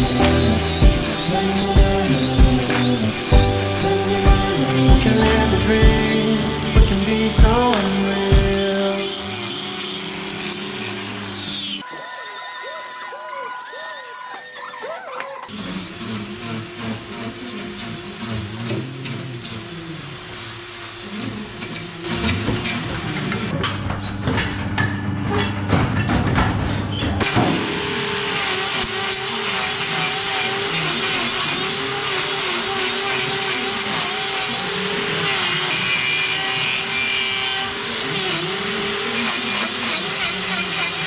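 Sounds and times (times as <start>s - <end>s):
angle grinder cutting hoof: 0.0s - 9.6s, 11.8s - 15.5s.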